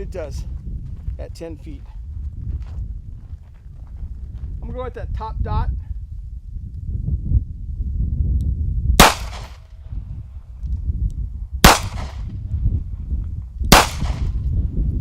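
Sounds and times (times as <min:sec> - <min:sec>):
steady low rumble: 0:00.0 - 0:15.0
revolver gunshots: 0:09.0 - 0:09.7, 0:11.6 - 0:12.3, 0:13.7 - 0:14.4.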